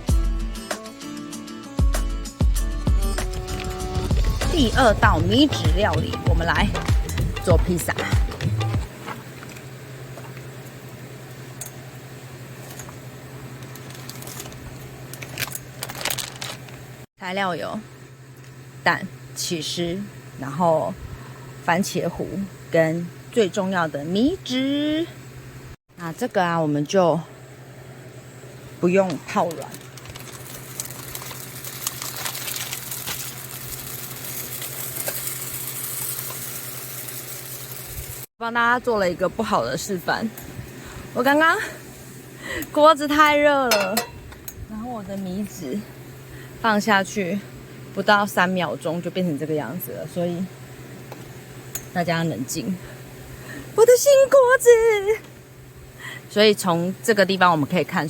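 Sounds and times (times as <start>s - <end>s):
steady low hum: 4.1s - 37.0s, 37.7s - 58.0s
rice paper sizzling in a pan: 12.5s - 17.1s, 28.8s - 38.3s.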